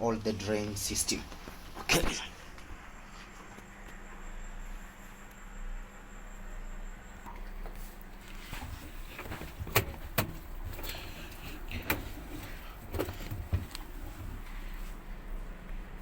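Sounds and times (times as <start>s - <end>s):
low steady hum: 0.0s - 16.0s
washing machine knocking and clunking: 8.4s - 16.0s.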